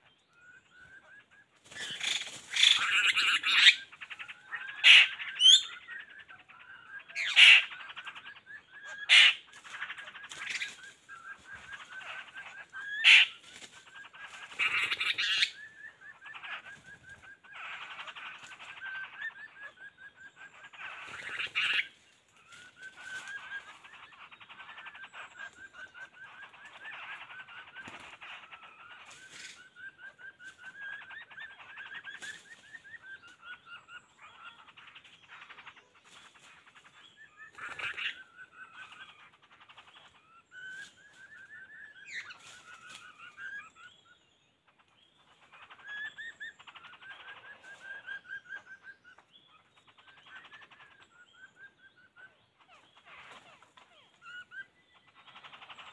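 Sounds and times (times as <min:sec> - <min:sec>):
birds trilling chatter: 0:00.0 - 0:55.9
sharp bird calls: 0:00.0 - 0:55.9.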